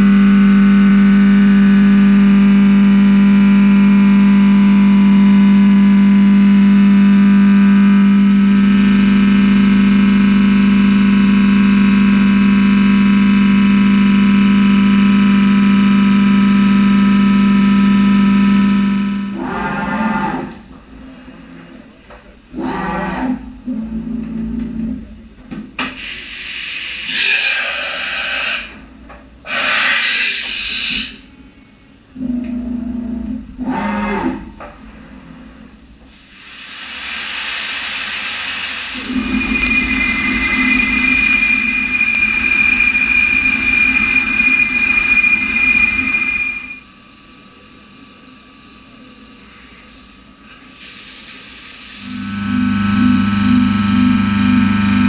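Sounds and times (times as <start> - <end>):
high steady whine: 0.0 - 19.5, 34.4 - 55.0
machine hissing: 26.0 - 28.8, 29.4 - 31.2, 36.2 - 46.8, 49.2 - 53.2.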